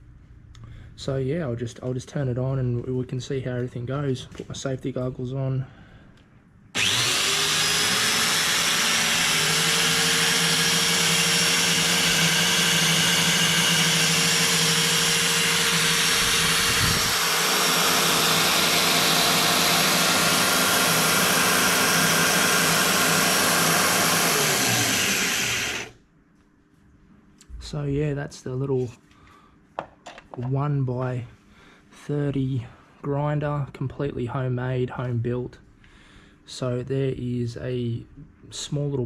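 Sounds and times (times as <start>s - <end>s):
belt grinder motor whine: 6.8s - 26.0s.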